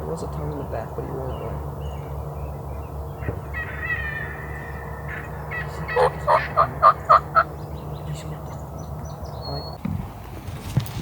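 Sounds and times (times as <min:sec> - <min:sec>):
wild turkey calling: 0:01.3 - 0:09.8.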